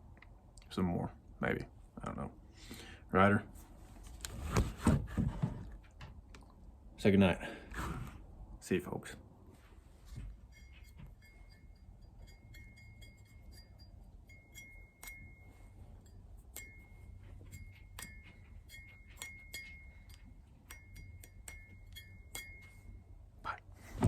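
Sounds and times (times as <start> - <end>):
light metallic clinking: 10.2 - 23.3.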